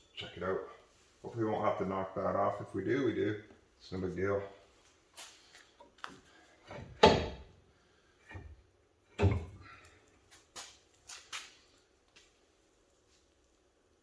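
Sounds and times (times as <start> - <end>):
metal clunks and knocks: 6.6 - 7.5, 8.2 - 9.6.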